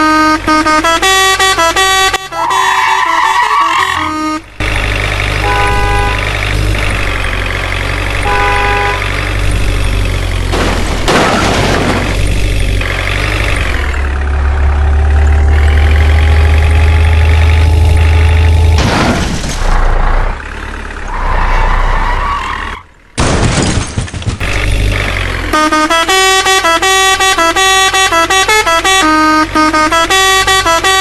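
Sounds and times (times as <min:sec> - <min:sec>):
truck horn honks: 0:00.0 - 0:04.7, 0:05.3 - 0:06.7, 0:08.1 - 0:09.2, 0:25.4 - 0:31.0
truck engine rumbling and revving: 0:00.0 - 0:31.0.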